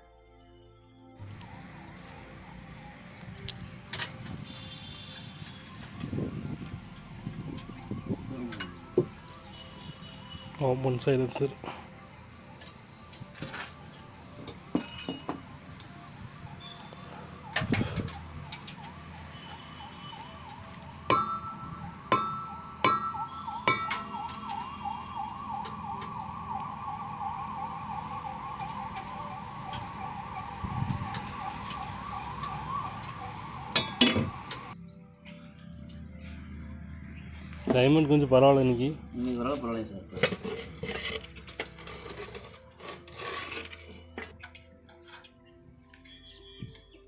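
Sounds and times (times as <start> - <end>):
siren-like warbling tone: 6.2 - 9.8, 18.8 - 34.8
hand tools clinking on engine parts: 14.4 - 15.4.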